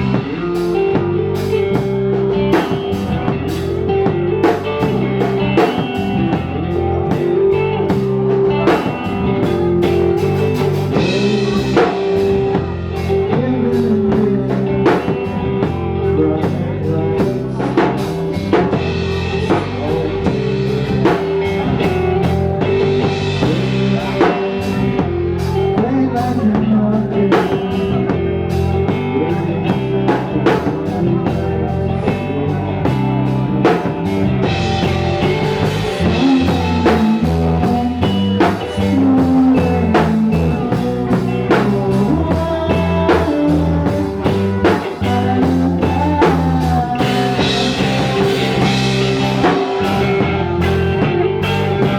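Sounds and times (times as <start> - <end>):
rock band playing live: 0.0 - 51.9.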